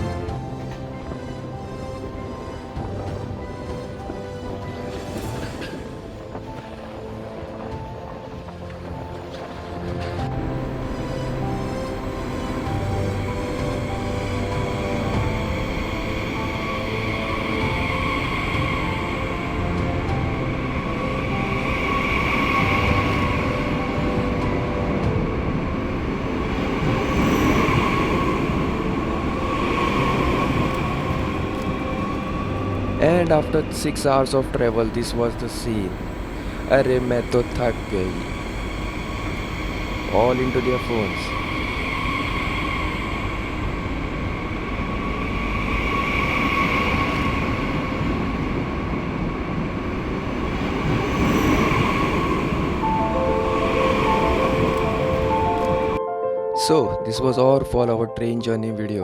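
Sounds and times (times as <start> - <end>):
train wheels rumbling on rails: 0.0 - 56.0
faint whine: 10.4 - 56.0.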